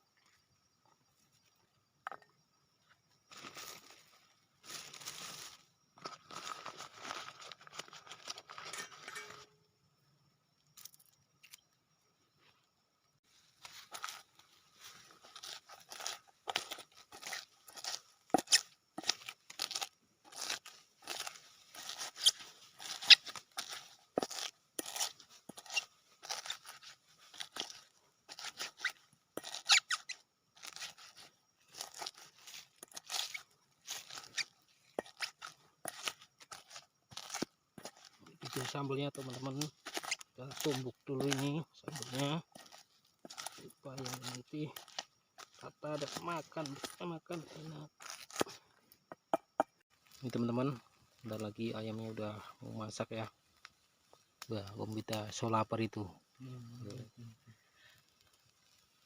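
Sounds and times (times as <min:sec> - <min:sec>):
rustling and crinkling: 0:02.9 - 0:09.5, 0:13.2 - 0:49.0.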